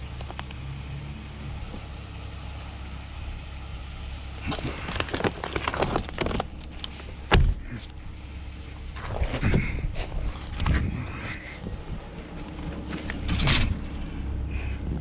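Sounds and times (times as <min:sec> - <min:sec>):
scrap parts clattering and knocking: 0:12.7 - 0:14.1.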